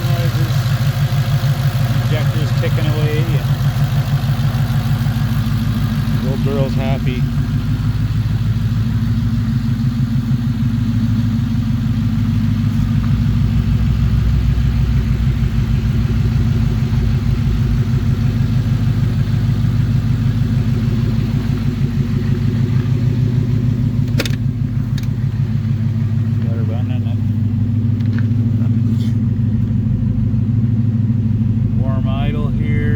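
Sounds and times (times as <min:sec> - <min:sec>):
car engine idling: 0:00.0 - 0:32.9
sharp click: 0:24.1 - 0:25.2.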